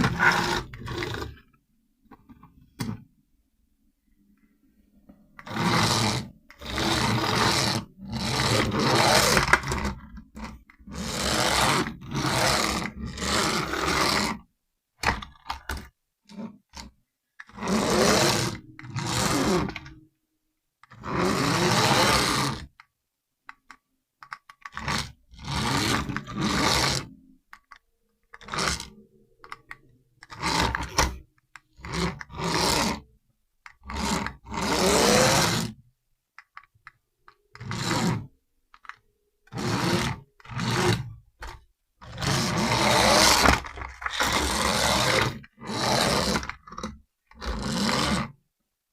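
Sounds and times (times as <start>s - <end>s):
toy car electric motor whirring: 5.4s - 14.4s, 15.0s - 20.0s, 20.8s - 22.8s, 24.3s - 33.1s, 33.7s - 35.8s, 37.5s - 48.4s.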